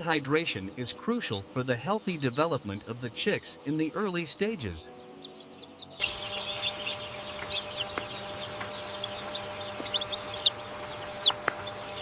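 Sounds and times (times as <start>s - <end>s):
chicks peeping: 0.0s - 12.0s
low steady hum: 6.0s - 12.0s.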